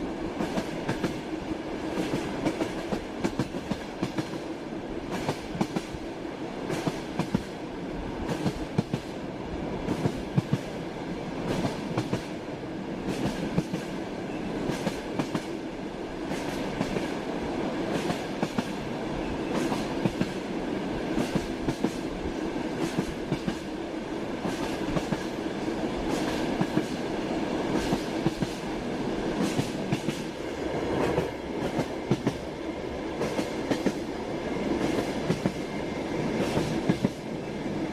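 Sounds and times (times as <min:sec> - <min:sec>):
train running rumble: 0:00.0 - 0:37.9
train wheels clacking on rail joints: 0:00.4 - 0:01.2, 0:01.9 - 0:04.5, 0:05.1 - 0:06.0, 0:11.4 - 0:12.3, 0:13.0 - 0:14.0, 0:14.6 - 0:15.6, 0:16.3 - 0:17.2, 0:17.9 - 0:18.8, 0:19.5 - 0:20.4, 0:21.2 - 0:22.1, 0:22.7 - 0:23.7, 0:24.4 - 0:25.4, 0:26.0 - 0:27.1, 0:27.7 - 0:28.7, 0:29.4 - 0:30.4, 0:31.0 - 0:32.5, 0:33.2 - 0:34.1, 0:34.7 - 0:35.6, 0:36.2 - 0:37.3.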